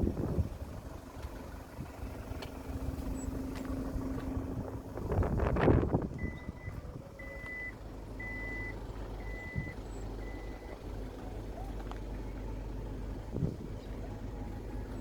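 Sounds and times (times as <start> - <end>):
engine idling rumble: 0.0 - 15.0
vehicle reversing beeper: 3.1 - 3.5, 6.1 - 11.8.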